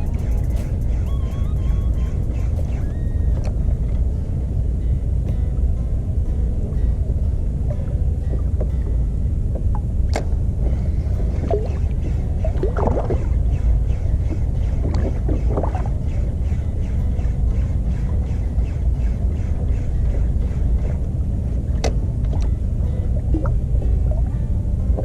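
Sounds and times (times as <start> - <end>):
outboard motor running: 0.0 - 4.1.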